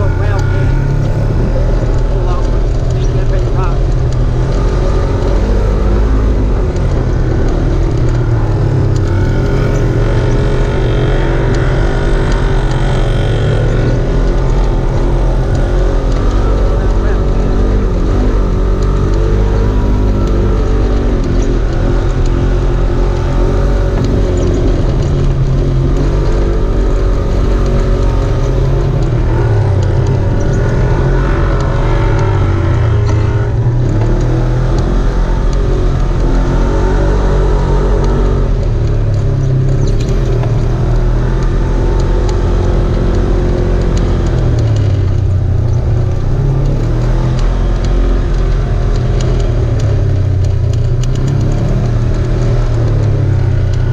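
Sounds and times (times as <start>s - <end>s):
vehicle engine revving: 0.0s - 53.9s.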